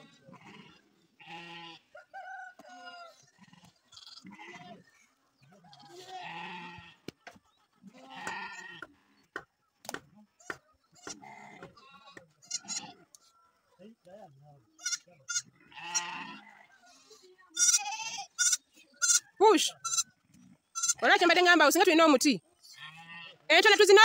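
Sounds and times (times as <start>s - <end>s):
livestock bleating: 0.0s - 1.9s, 3.2s - 5.0s, 5.7s - 7.0s, 7.8s - 8.8s, 11.0s - 13.1s, 14.8s - 20.1s, 20.7s - 21.3s, 22.7s - 24.0s.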